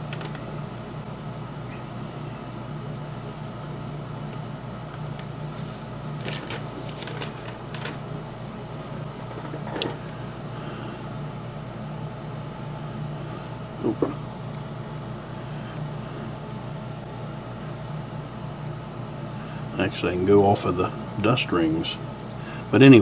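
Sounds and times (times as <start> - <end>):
workshop room hum: 0.0 - 23.0.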